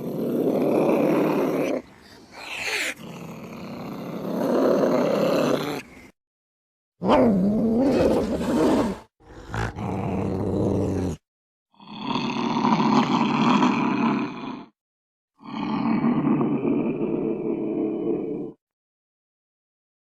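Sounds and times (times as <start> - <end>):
cat yowling and growling: 0.6 - 3.0.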